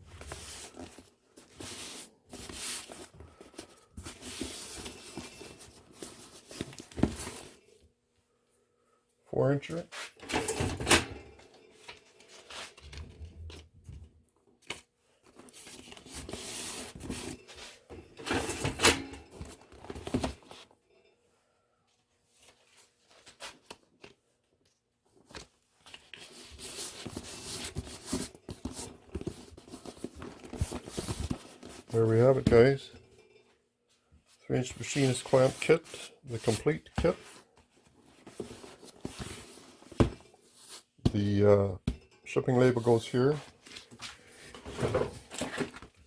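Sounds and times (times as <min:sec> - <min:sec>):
cardboard box rustling and knocks: 0:06.4 - 0:07.5.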